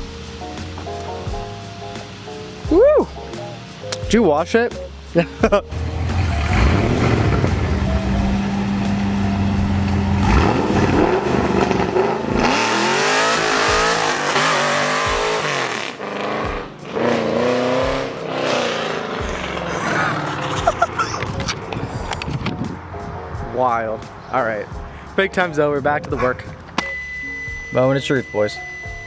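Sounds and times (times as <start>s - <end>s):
car engine idling and revving: 5.7s - 27.4s.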